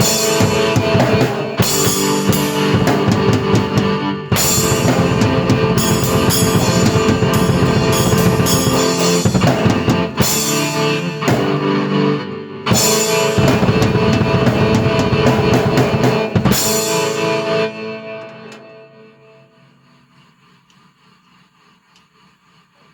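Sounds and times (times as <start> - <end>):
cymbal crashes: 0.0 - 11.9, 12.7 - 17.9
rock drum kit: 0.0 - 12.0, 12.7 - 17.7
keyboard playing: 0.0 - 19.0.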